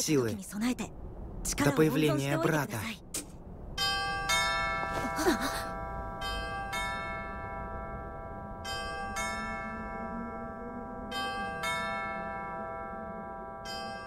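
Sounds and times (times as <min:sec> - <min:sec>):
bells ringing: 0:03.8 - 0:14.0.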